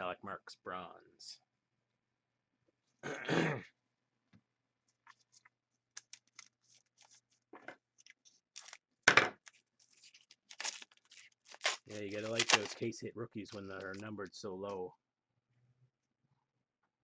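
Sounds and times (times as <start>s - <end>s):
cards clicking and rustling: 5.1s - 12.9s
foil wrapper tearing crinkle: 5.9s - 7.4s, 8.0s - 8.8s, 9.4s - 12.9s, 13.5s - 14.0s.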